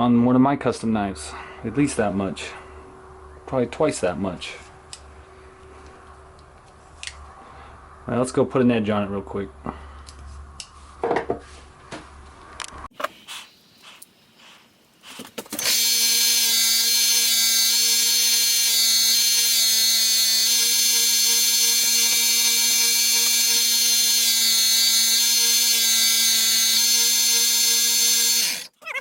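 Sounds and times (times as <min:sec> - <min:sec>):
grinder motor whining: 0:15.5 - 0:28.8.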